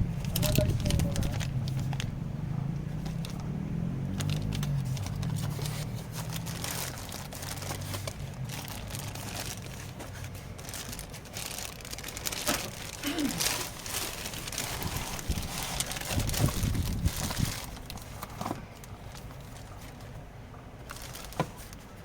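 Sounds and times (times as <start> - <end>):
packaging crinkling and rustling: 0.2 - 2.1, 3.0 - 22.0.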